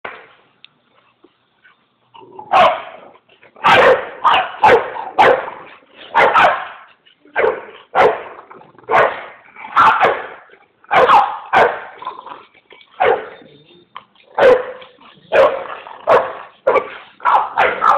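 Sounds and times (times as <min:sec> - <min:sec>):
dog barking: 0:02.5 - 0:08.3, 0:08.9 - 0:12.0, 0:13.0 - 0:13.4, 0:14.4 - 0:17.9.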